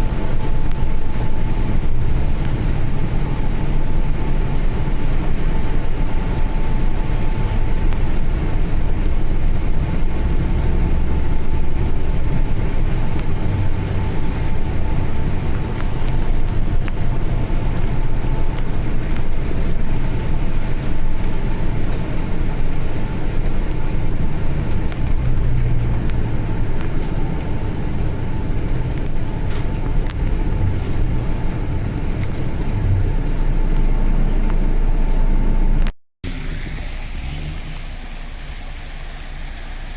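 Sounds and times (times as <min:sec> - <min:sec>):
bus engine and road rumble: 0:00.0 - 0:39.9.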